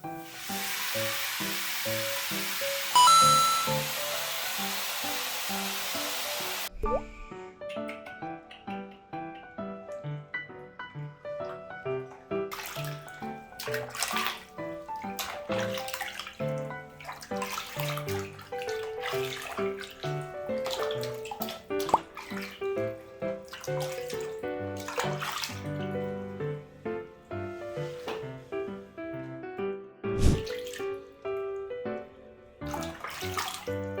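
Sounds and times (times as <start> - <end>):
background keyboard music: 0.0 - 34.0
running water splashing: 12.0 - 26.1, 30.2 - 31.0, 32.6 - 34.0.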